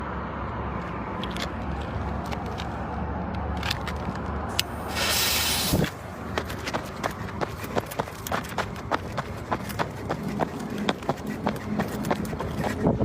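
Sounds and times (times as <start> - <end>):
firework hissing spray: 4.7 - 6.0.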